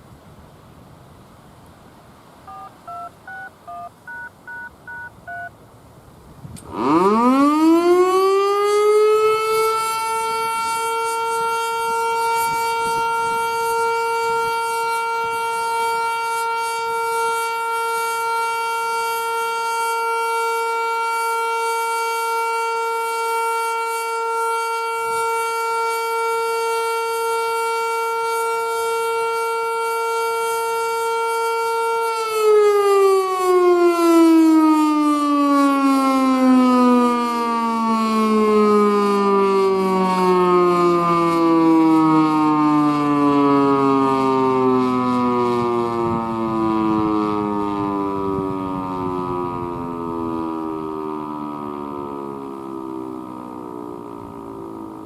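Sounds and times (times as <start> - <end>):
touch-tone beeps: 2.5 - 5.5
warning siren winding up: 6.6 - 55.0.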